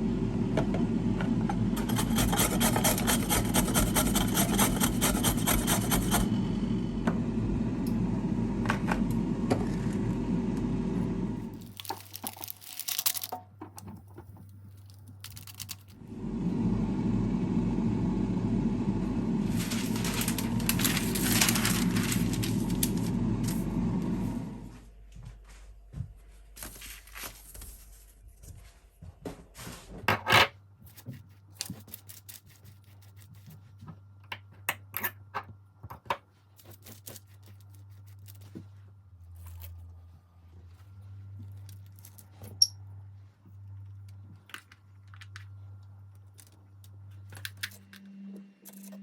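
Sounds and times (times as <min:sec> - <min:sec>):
low steady hum: 0:00.0 - 0:49.0
packaging handled by hand: 0:11.6 - 0:16.0, 0:19.5 - 0:23.6.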